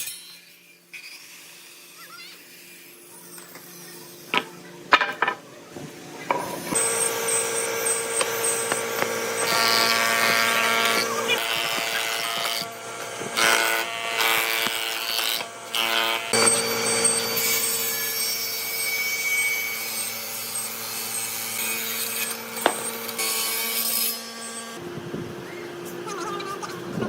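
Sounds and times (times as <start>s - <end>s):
power tool motor hum: 6.3s - 24.8s
wood rasping being cut: 6.3s - 24.8s.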